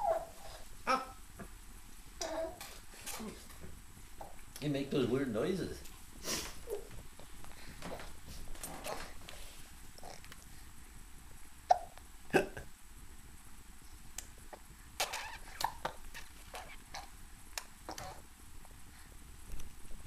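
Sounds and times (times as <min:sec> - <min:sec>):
baby hiccupping: 0:00.0 - 0:01.2, 0:02.2 - 0:02.8, 0:08.8 - 0:09.2, 0:11.7 - 0:12.7, 0:14.5 - 0:18.2.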